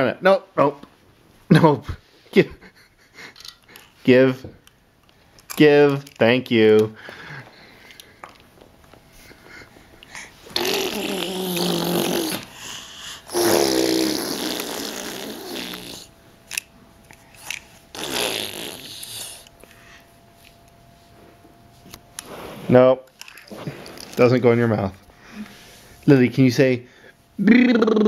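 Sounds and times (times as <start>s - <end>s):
toddler blowing with mouth: 10.5s - 16.1s, 17.9s - 19.5s.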